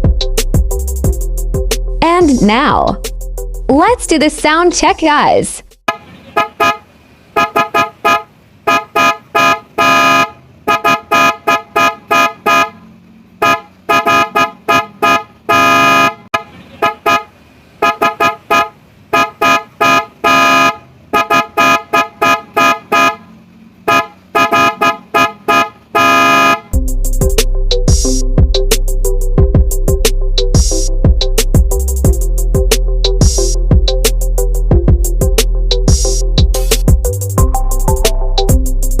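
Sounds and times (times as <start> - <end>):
horn honking: 5.9 - 26.8.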